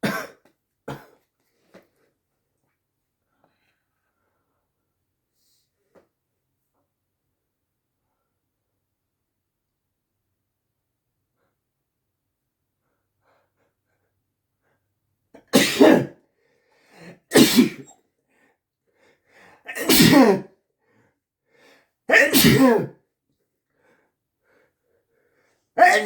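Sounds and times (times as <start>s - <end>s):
man sneezing wetly: 15.5s - 16.2s, 17.2s - 17.9s, 19.7s - 20.5s, 22.1s - 23.0s, 25.8s - 26.0s.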